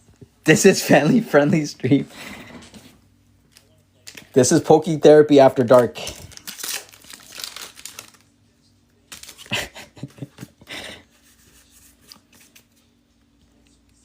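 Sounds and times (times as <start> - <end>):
foil wrappers crinkling and tearing: 5.5 - 8.3, 9.0 - 10.0.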